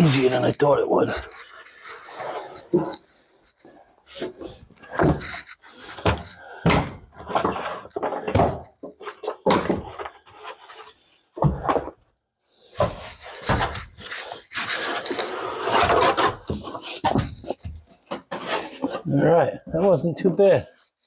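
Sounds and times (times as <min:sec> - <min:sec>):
knocks and thuds: 0:06.0 - 0:10.1, 0:11.4 - 0:11.9.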